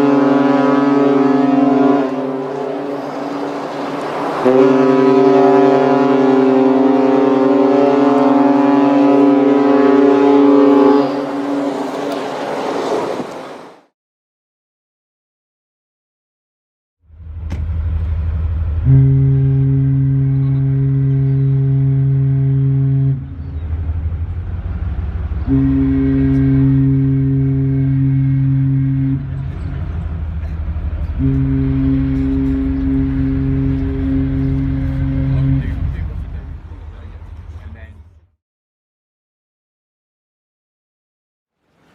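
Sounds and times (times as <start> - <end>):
ship's horn blast: 0.0 - 13.7, 17.1 - 38.1
low rumble: 17.1 - 38.2.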